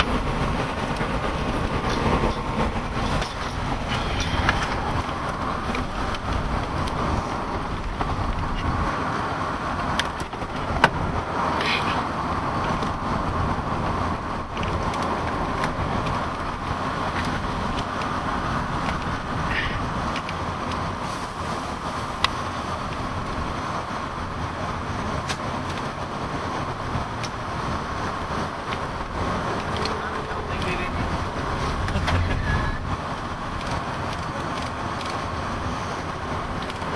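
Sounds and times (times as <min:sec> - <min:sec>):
vehicle road and engine noise: 0:00.0 - 0:36.9.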